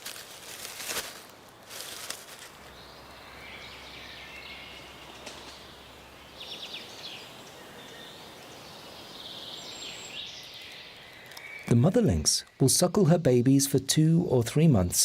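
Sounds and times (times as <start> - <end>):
small birds singing: 1.5 - 13.5
bird trill: 2.7 - 12.7.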